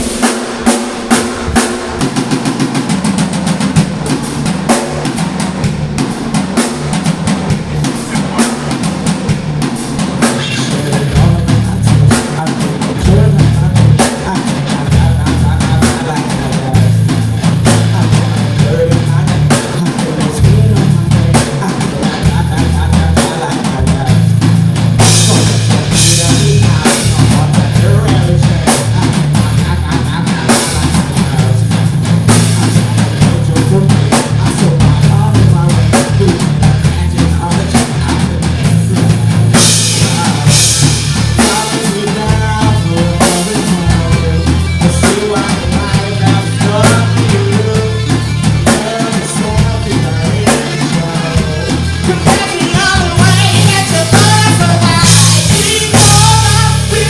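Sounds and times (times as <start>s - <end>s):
drum kit beat: 0.0s - 57.0s
live rock band playing: 0.0s - 57.0s
low bass line: 7.4s - 12.2s, 12.9s - 14.2s, 14.8s - 19.5s, 20.3s - 21.4s, 23.8s - 57.0s.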